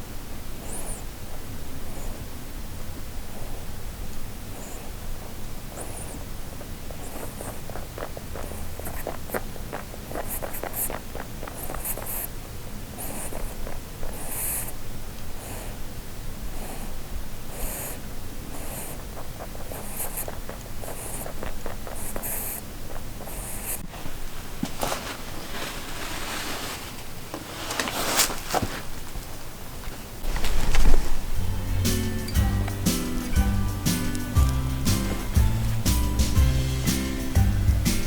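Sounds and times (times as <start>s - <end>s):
rabbit snoring: 0.0s - 24.2s.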